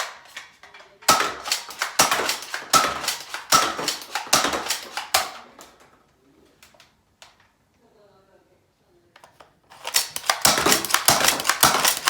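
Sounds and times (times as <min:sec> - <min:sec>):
toy blaster firing: 0:09.8 - 0:12.0.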